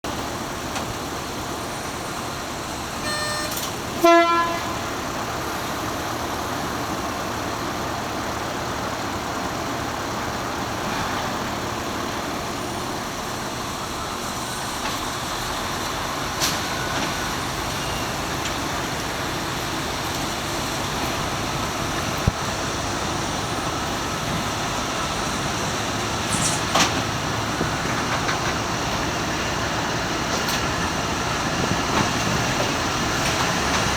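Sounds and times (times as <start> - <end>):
level crossing bell ringing: 3.0 - 3.7
short horn toot: 3.0 - 4.9.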